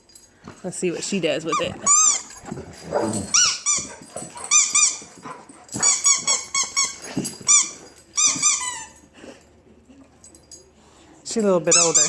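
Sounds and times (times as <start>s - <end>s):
dog chewing: 0.7s - 8.8s
squeaky toy squeaks: 1.5s - 2.6s, 3.3s - 5.1s, 5.8s - 9.0s, 11.7s - 12.0s.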